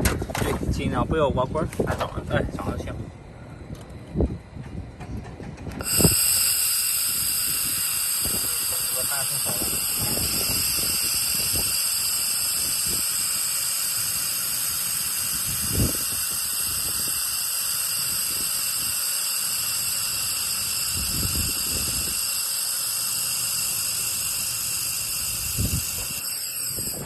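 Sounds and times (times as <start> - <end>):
high steady whines: 0.0 - 27.0
laser welder hissing: 5.8 - 27.0.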